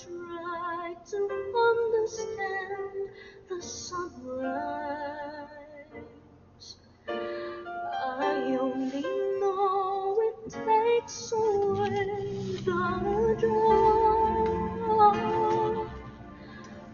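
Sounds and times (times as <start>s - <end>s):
woman singing long notes: 8.0s - 16.9s.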